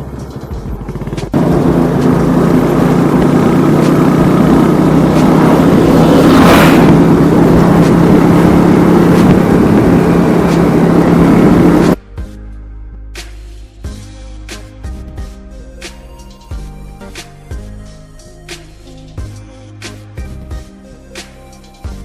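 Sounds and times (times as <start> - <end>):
engine running steadily: 0.0 - 12.0
loud rushing noise: 1.3 - 12.0.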